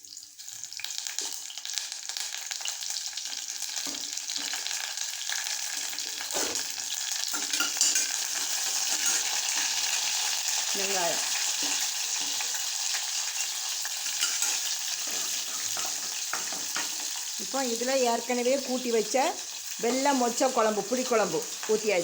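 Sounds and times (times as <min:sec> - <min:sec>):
spices sizzling in hot oil: 0:00.0 - 0:22.0.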